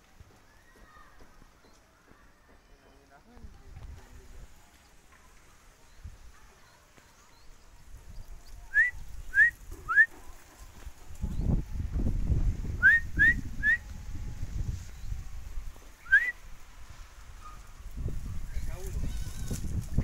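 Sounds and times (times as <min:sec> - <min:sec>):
short rising whistles: 0:08.7 - 0:10.1, 0:12.8 - 0:13.9, 0:16.0 - 0:16.4.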